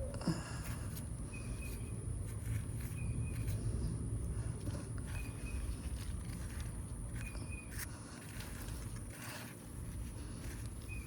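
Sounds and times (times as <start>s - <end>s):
soft rustles of digging: 0.3s - 11.0s
bird chirping: 1.3s - 2.0s, 2.8s - 3.6s, 5.1s - 5.8s, 7.1s - 7.8s.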